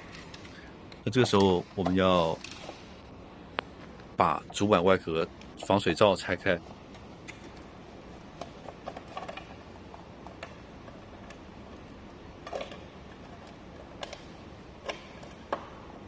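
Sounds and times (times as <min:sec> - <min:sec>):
plastic parts clicking: 0:08.3 - 0:15.7.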